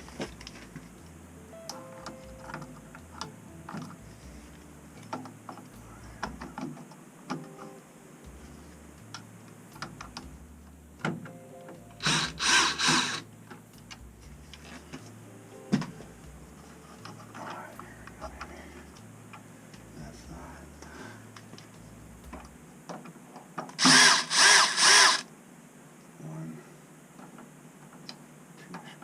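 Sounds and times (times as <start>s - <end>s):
loud noisy burst: 12.0s - 13.2s, 23.8s - 25.3s.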